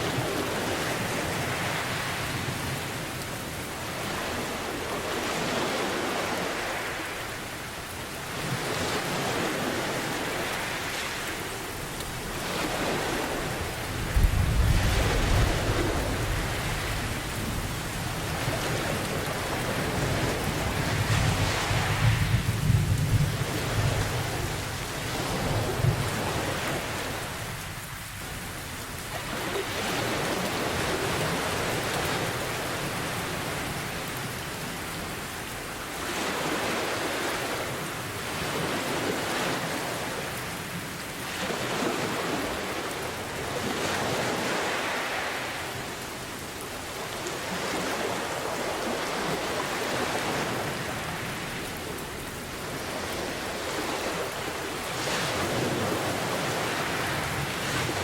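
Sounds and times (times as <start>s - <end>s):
ocean waves washing in: 0.0s - 58.0s
steady rain: 0.0s - 58.0s
low roll of thunder: 14.0s - 18.5s, 19.8s - 26.5s.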